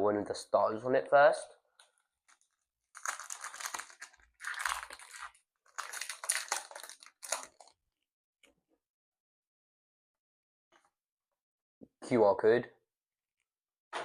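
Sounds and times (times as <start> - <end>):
foil wrapper crinkling and tearing: 2.3 - 7.8.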